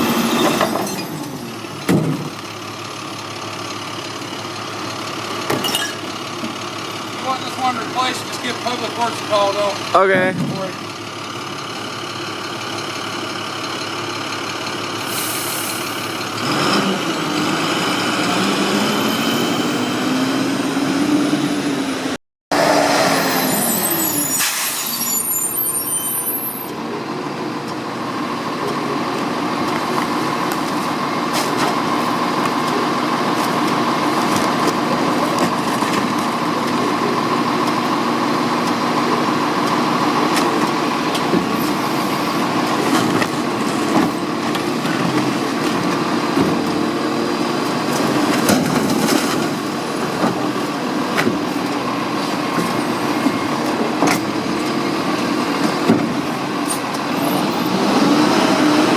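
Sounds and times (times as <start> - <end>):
garbage truck diesel engine: 0.0 - 58.9.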